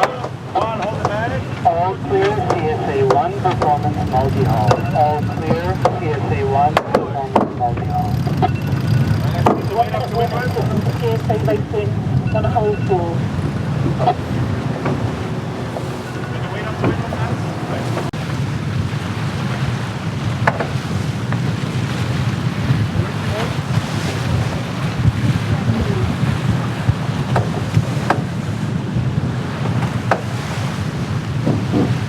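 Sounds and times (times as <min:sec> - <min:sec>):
water rushing past hull: 0:00.0 - 0:32.0
wind buffeting microphone: 0:00.0 - 0:32.0
sharp knocks: 0:08.4 - 0:09.8, 0:13.4 - 0:18.1, 0:20.4 - 0:20.8, 0:26.9 - 0:28.3, 0:29.7 - 0:30.3.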